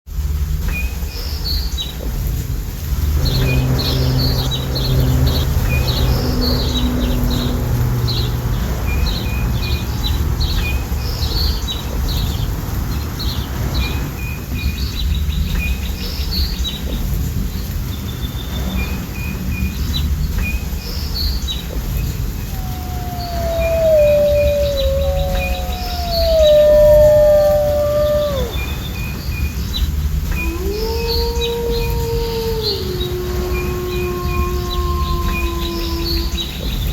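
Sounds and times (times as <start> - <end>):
falling water rushing: 0.2 - 36.9
birds chirping and singing: 19.8 - 36.9.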